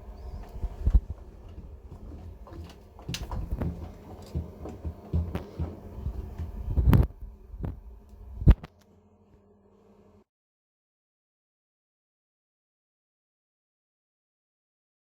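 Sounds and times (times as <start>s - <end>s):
washing machine thudding and knocking: 0.0s - 7.1s
faint hum: 0.0s - 10.3s.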